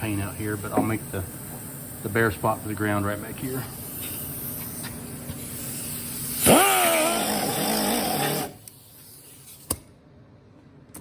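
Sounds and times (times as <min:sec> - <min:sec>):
handheld grinder whine: 0:06.4 - 0:08.6.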